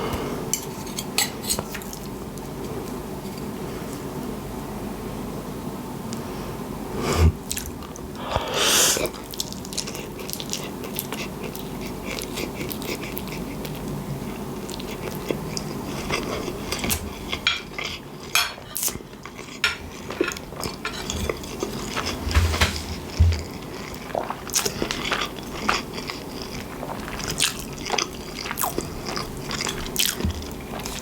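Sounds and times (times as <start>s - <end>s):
cutlery clinking on a plate: 0.6s - 1.8s, 16.8s - 19.0s, 19.6s - 23.4s
chewing and wet mouth sounds: 9.0s - 31.0s.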